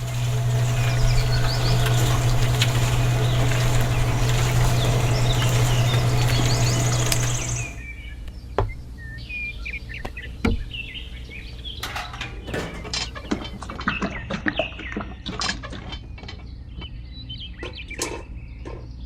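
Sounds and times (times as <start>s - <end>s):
small motor humming: 0.0s - 7.8s
birds chirping: 0.0s - 19.0s.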